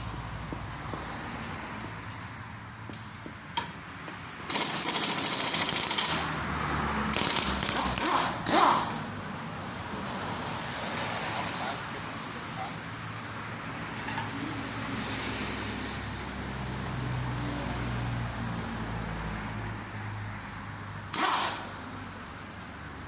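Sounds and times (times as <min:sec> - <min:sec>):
tools clicking on metal: 0:01.4 - 0:02.3
impact wrench rattling: 0:04.5 - 0:06.2.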